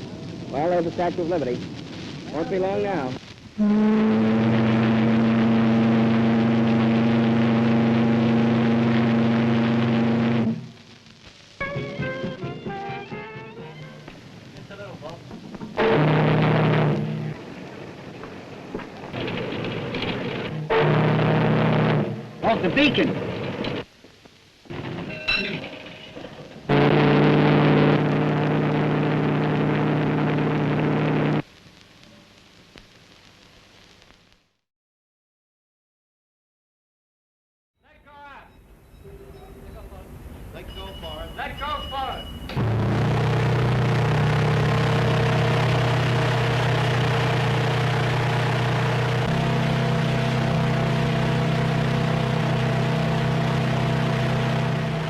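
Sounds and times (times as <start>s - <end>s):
film soundtrack hiss: 0.0s - 34.6s, 37.8s - 55.0s
deep ship steam whistle: 3.6s - 10.7s, 20.6s - 22.2s.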